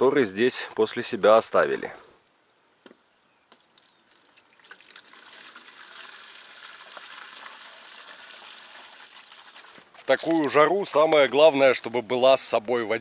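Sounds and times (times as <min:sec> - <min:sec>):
water pouring into a canister: 0:03.8 - 0:10.4.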